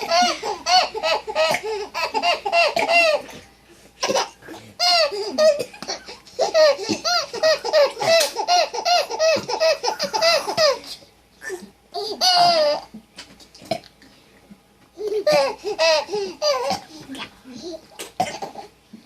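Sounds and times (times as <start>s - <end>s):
baby giggling: 0.0s - 3.4s, 4.0s - 12.9s, 15.0s - 17.8s.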